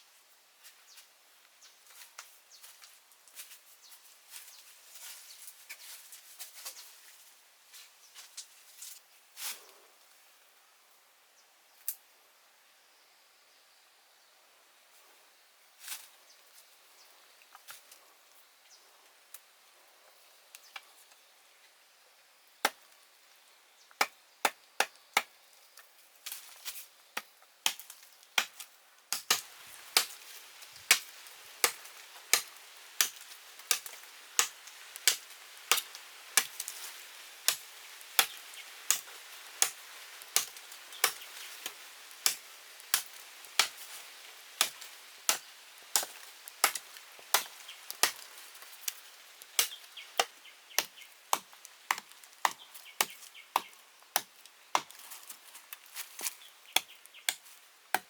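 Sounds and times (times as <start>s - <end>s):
wood being chopped: 24.0s - 25.3s, 27.2s - 36.9s, 37.5s - 39.8s, 40.4s - 41.5s, 42.2s - 43.9s, 44.6s - 48.7s, 49.6s - 55.2s, 56.0s - 58.0s.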